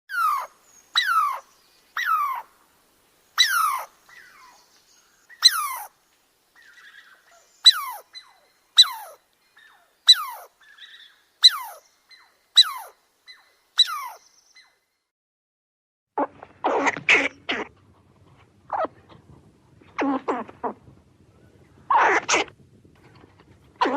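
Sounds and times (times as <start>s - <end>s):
squirrel calling: 0.1s - 2.6s, 3.3s - 6.0s, 6.6s - 14.8s, 16.2s - 17.8s, 18.7s - 19.2s.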